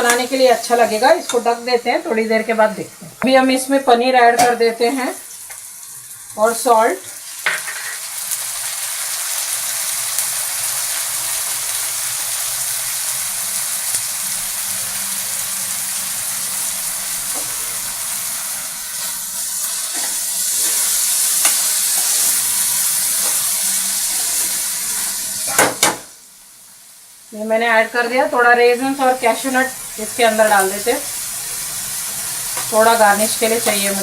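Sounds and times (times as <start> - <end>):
vegetables sizzling in oil: 0.0 - 34.0.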